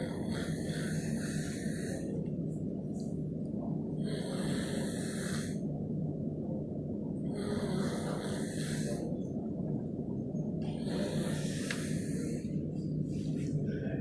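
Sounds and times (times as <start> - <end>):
person snoring: 0.0 - 2.1, 4.0 - 5.6, 7.3 - 9.1, 10.8 - 12.5.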